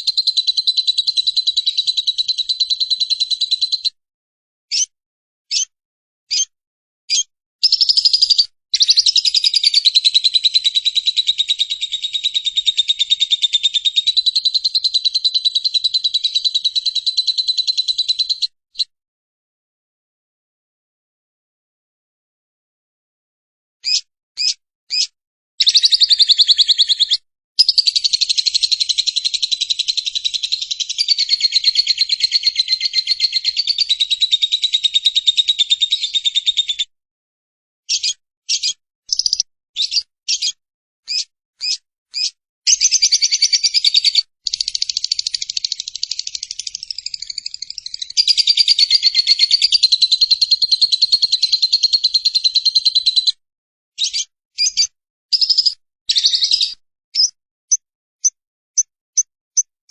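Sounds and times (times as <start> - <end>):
bird chattering trill: 0.0 - 4.0, 5.5 - 5.7, 7.1 - 18.5, 23.8 - 36.9, 37.9 - 53.4, 54.0 - 57.4.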